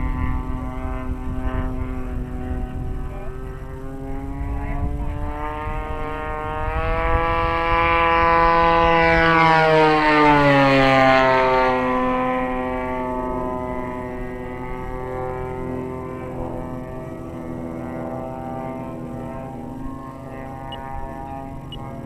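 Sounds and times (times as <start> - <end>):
model plane engine flying past: 0.0 - 22.0.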